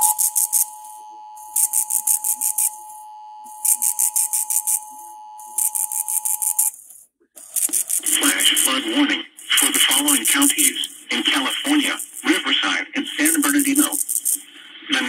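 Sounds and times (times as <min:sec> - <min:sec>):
quick high-pitched beeps: 0:00.0 - 0:06.8, 0:07.6 - 0:08.8, 0:09.4 - 0:12.4
steady electronic alert tone: 0:00.0 - 0:06.8, 0:07.4 - 0:12.5.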